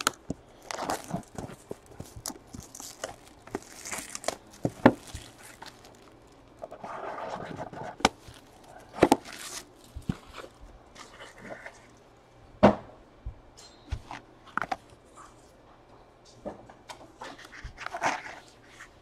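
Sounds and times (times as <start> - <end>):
cards rustling: 0.0 - 10.6.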